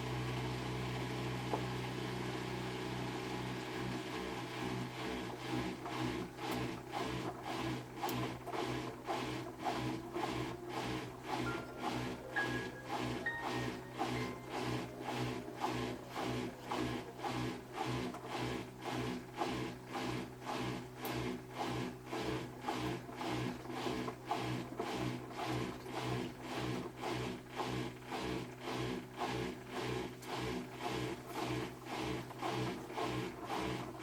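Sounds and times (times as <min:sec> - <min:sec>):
washing machine motor hum: 0:00.0 - 0:34.0
washing machine drum churning: 0:03.5 - 0:34.0.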